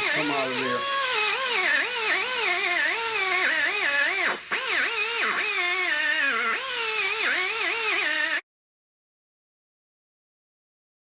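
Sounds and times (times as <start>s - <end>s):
die grinder cutting metal: 0.0s - 8.4s.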